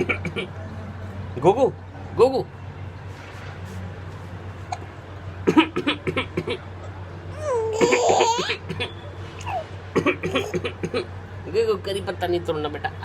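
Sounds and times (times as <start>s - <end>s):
baby squealing: 7.4s - 8.6s
baby laughing: 7.4s - 8.7s, 9.4s - 10.8s.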